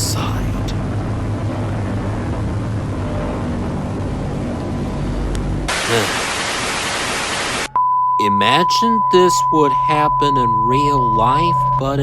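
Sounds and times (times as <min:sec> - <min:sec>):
loud static hiss: 0:00.0 - 0:00.8, 0:05.7 - 0:07.7
low droning hum over rumble: 0:00.0 - 0:05.9.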